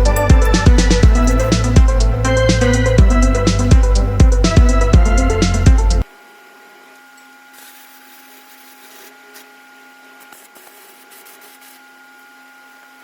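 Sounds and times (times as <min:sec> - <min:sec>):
faint electrical hum with whine: 0:04.0 - 0:13.0.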